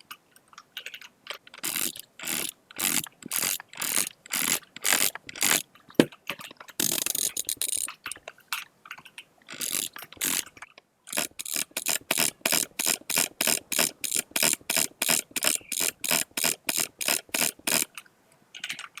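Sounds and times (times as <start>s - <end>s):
sharp mechanical clicking: 1.5s - 6.1s, 6.7s - 8.2s, 9.5s - 18.0s.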